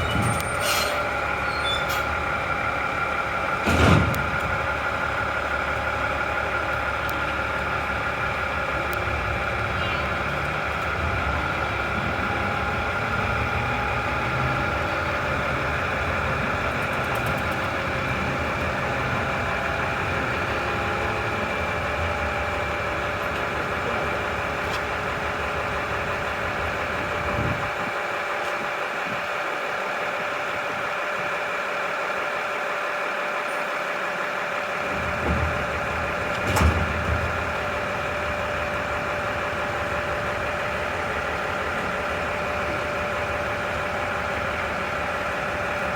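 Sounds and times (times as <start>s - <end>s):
diesel engine idling: 0.0s - 45.9s
knocks and clunks: 3.6s - 4.6s, 34.9s - 37.8s.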